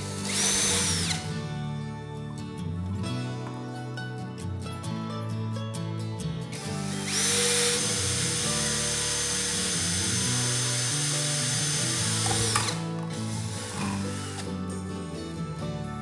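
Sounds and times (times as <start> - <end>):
electric drill whining: 0.0 - 1.4, 6.5 - 14.8.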